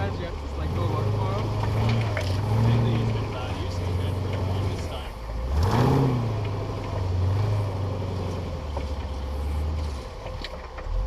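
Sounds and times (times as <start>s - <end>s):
buggy engine revving and running: 0.0s - 11.0s.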